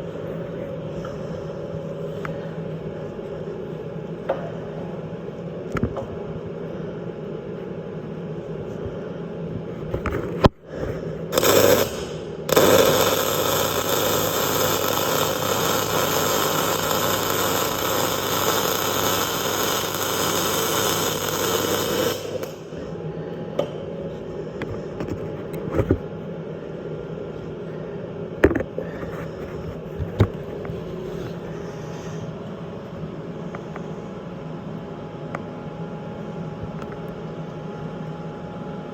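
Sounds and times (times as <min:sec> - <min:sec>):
arc welding crackling hiss: 0:11.3 - 0:22.8.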